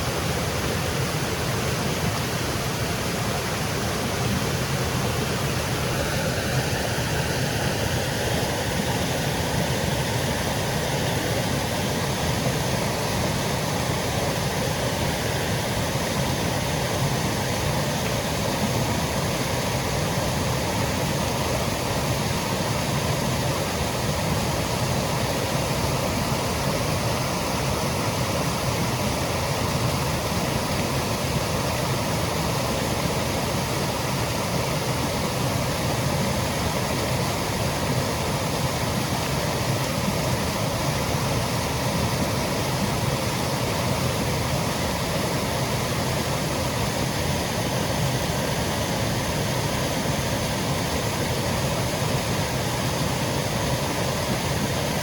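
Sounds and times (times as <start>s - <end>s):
waterfall cascading: 0.0s - 55.0s.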